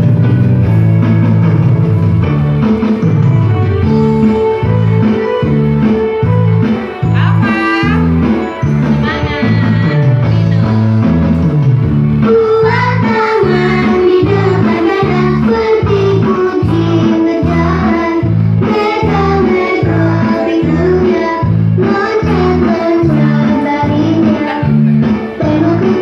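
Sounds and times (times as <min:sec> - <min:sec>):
person singing: 0:07.0 - 0:11.1, 0:12.2 - 0:26.0.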